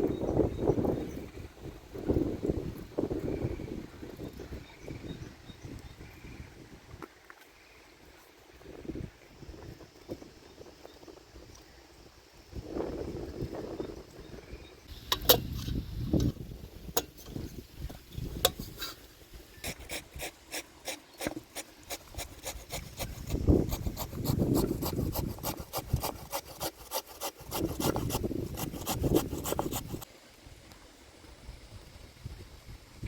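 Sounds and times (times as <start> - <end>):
potatoes rasping on metal grater: 19.6 - 30.0.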